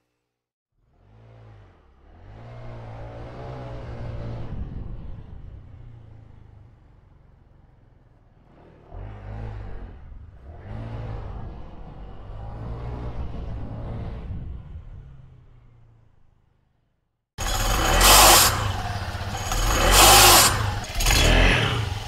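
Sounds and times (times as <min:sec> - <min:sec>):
scooter engine revving: 0:17.4 - 0:22.0.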